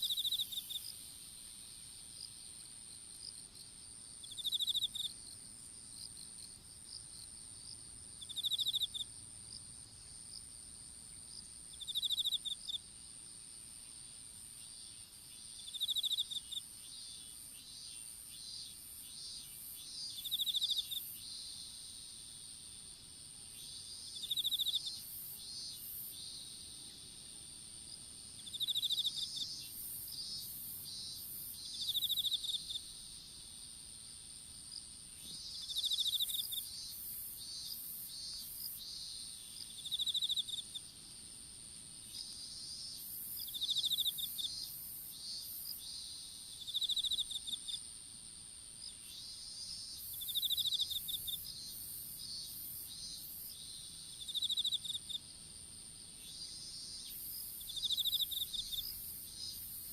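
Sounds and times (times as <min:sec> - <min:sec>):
insects trilling: 0:00.0 - 0:10.4, 0:11.2 - 0:12.9, 0:13.7 - 0:55.4, 0:56.0 - 0:59.9.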